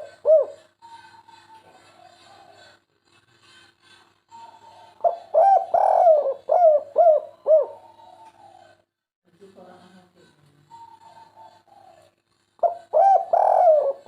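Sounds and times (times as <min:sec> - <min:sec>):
dove cooing: 0:00.0 - 0:02.8, 0:04.3 - 0:08.9, 0:10.7 - 0:14.0.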